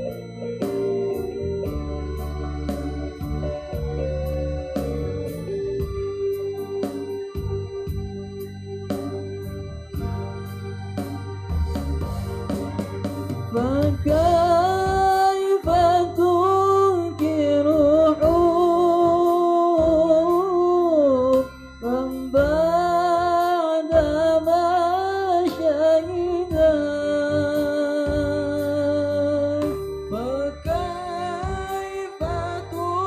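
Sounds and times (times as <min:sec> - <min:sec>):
instrumental backing music: 0:00.0 - 0:33.0
young man singing: 0:13.5 - 0:33.0.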